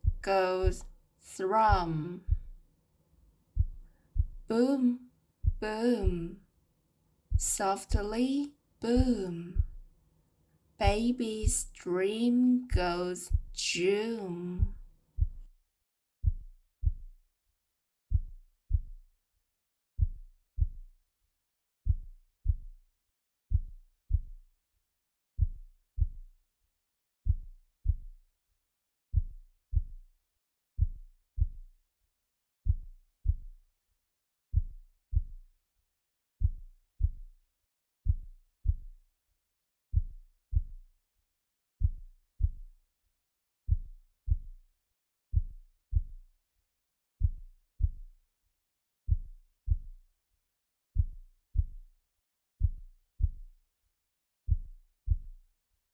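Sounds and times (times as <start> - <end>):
heartbeat thumps: 0.0 - 0.8, 1.4 - 2.6, 3.6 - 6.4, 7.3 - 9.9, 10.8 - 15.5.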